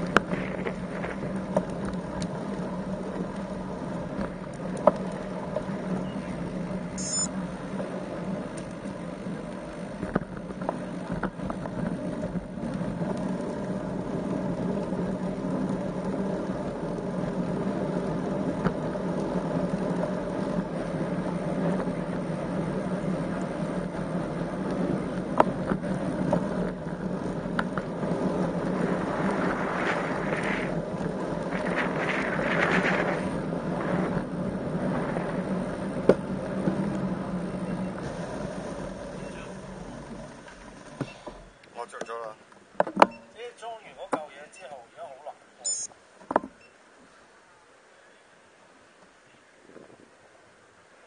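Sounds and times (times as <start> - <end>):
bicycle clicks and knocks: 0.0 - 6.1
wind and road noise: 0.0 - 51.0.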